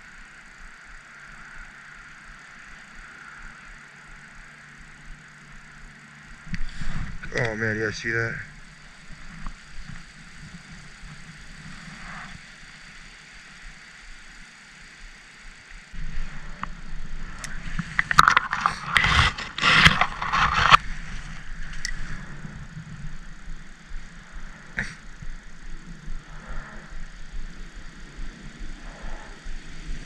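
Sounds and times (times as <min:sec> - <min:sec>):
wind buffeting microphone: 0:06.4 - 0:12.4, 0:15.9 - 0:30.0
scraping and clattering: 0:17.7 - 0:22.0.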